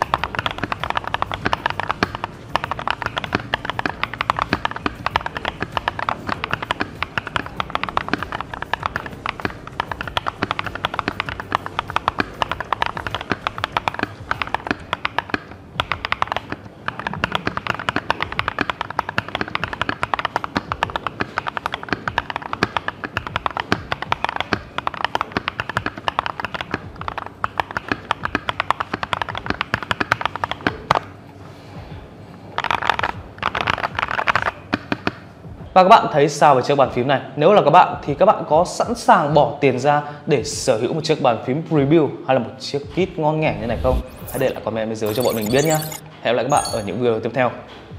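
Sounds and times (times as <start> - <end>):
mechanical keyboard typing: 0.0 - 30.6.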